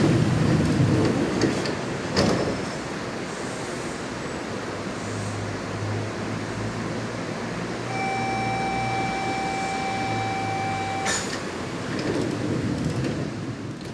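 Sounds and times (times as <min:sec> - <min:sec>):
electric train rumbling: 0:07.7 - 0:13.9
electronic beep: 0:07.9 - 0:11.6.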